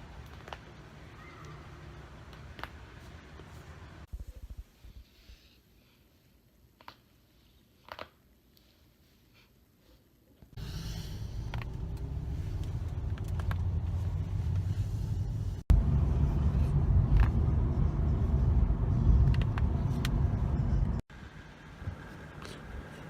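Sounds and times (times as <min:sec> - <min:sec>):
steady low rumble: 0:10.6 - 0:21.1.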